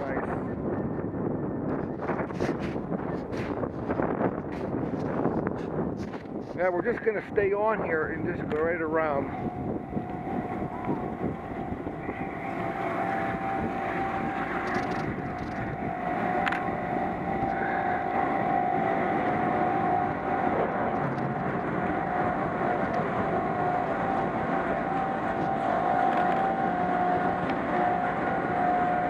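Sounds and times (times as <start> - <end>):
chairlift machine whine: 0.0 - 29.0
wind noise: 0.0 - 29.0.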